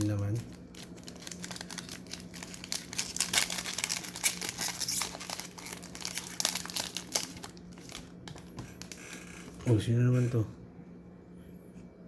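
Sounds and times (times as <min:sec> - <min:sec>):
plastic packaging crinkling: 0:00.0 - 0:09.6.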